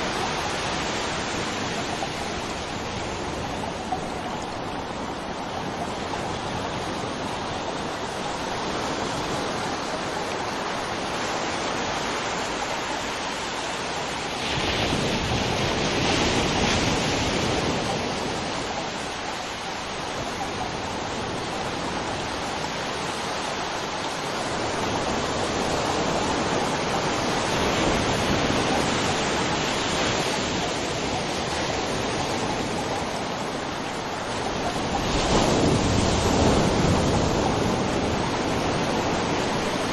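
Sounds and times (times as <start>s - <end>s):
river water flowing over rocks: 0.0s - 15.9s.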